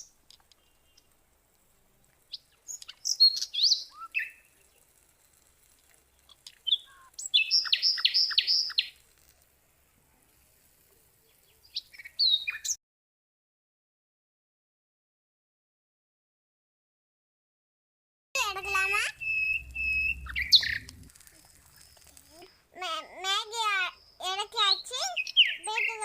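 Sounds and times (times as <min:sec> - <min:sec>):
small birds chirping and whistling: 0:00.0 - 0:01.2, 0:02.2 - 0:09.3, 0:11.2 - 0:12.8, 0:18.4 - 0:22.5, 0:23.7 - 0:26.0.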